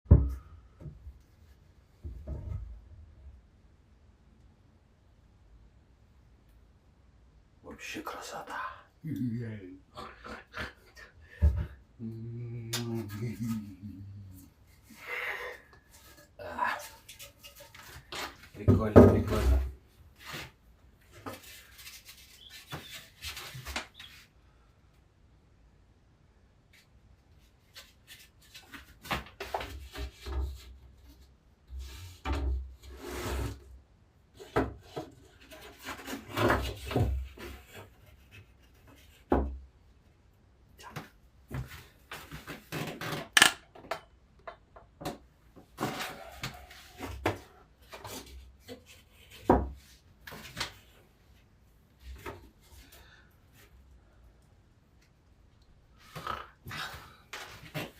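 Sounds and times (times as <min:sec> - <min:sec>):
wood knocking and scraping on wood: 0:00.1 - 0:02.9, 0:15.7 - 0:24.2, 0:27.6 - 0:33.6, 0:34.4 - 0:39.7, 0:40.8 - 0:51.1, 0:52.0 - 0:52.9.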